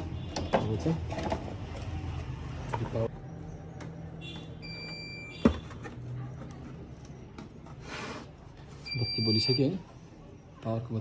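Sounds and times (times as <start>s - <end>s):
short electronic beep: 8.9s - 9.8s.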